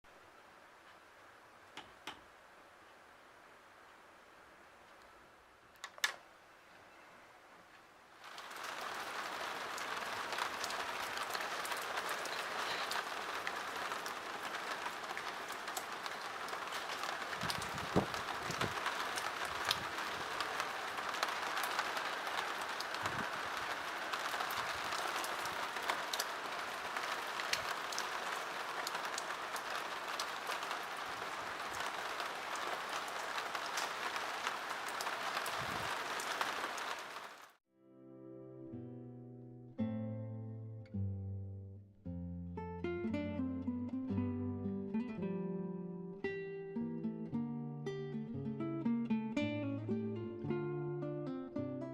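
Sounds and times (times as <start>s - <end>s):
wind: 0.0s - 37.6s
heavy pouring rain: 8.0s - 37.6s.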